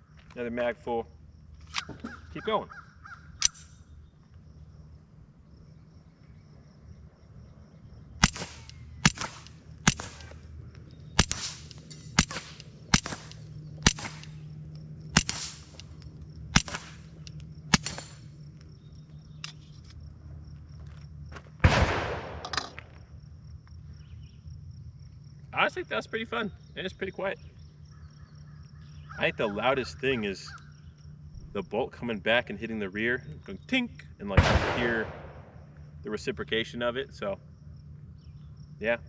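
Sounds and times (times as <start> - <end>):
suppressed pistol shots: 8.2 - 10.5, 11.1 - 18.3, 21.6 - 22.9, 34.4 - 35.6.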